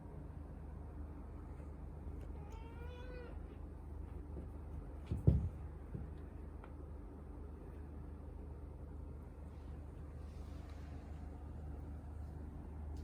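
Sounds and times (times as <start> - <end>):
kitten meowing: 2.4 - 3.4.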